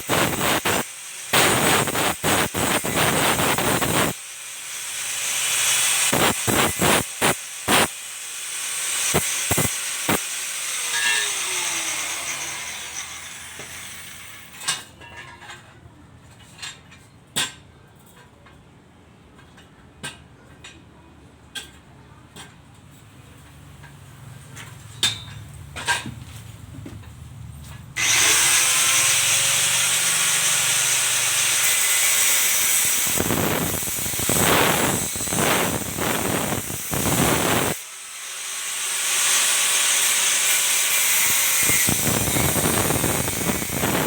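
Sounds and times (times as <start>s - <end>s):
arc welding hiss and crackle: 0.0s - 14.6s, 28.0s - 44.0s.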